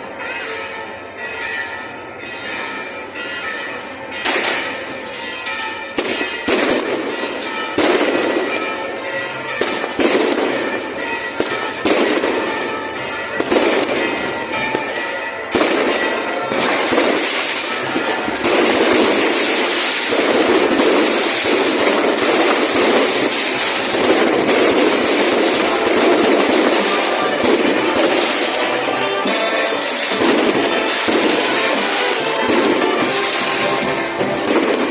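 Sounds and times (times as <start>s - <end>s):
fireworks crackling barrage: 0.0s - 34.9s
firework bangs: 3.4s - 34.9s.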